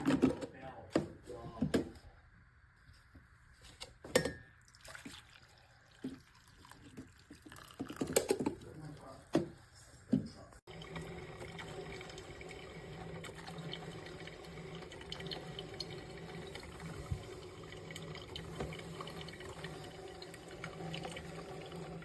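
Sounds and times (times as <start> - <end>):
water trickling: 10.7 - 22.0.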